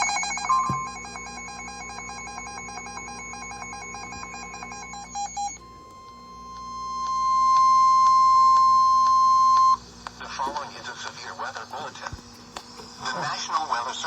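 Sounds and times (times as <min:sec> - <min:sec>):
electronic data tones: 0:00.0 - 0:09.8
steady warning alarm tone: 0:00.0 - 0:09.9.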